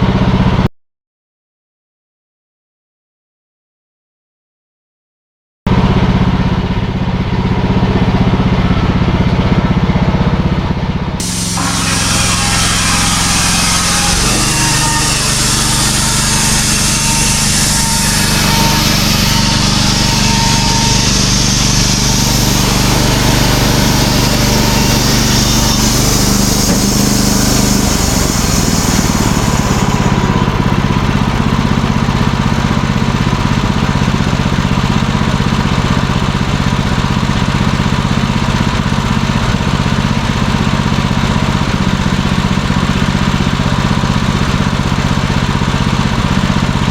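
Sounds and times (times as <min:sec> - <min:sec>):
sawmill engine running: 0:00.0 - 0:00.7, 0:05.7 - 0:46.9
high hiss: 0:11.2 - 0:15.2, 0:24.1 - 0:30.0.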